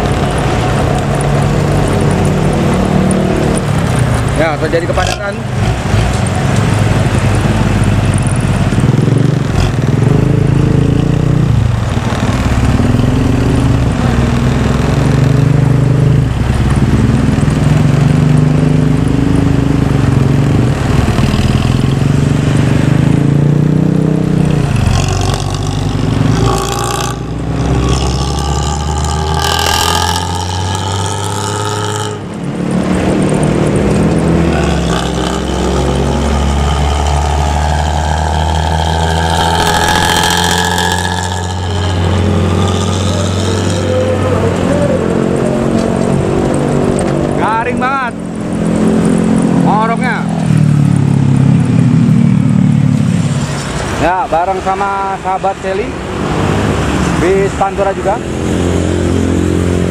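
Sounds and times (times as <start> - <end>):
bus diesel engine growling: 0.0 - 59.9
higher-pitched tones: 33.2 - 45.8.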